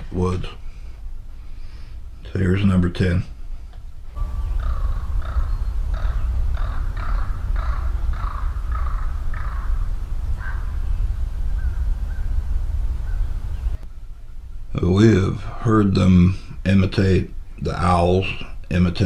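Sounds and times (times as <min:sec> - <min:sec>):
low wind rumble: 0:00.0 - 0:19.0
harsh crow-like cawing: 0:04.2 - 0:11.0.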